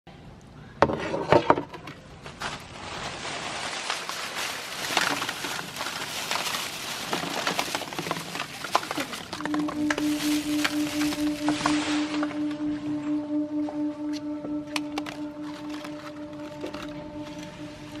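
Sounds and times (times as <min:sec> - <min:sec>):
crisp shells crunching in grinder: 0:03.3 - 0:10.8.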